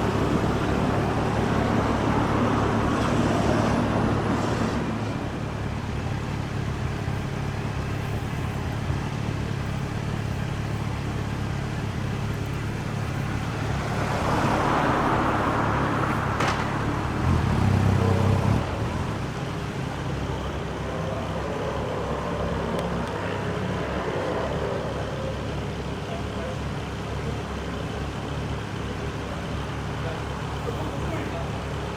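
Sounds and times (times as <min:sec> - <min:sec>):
vehicle passing: 0:00.0 - 0:05.9, 0:13.1 - 0:26.6
traffic engines running: 0:00.0 - 0:31.9.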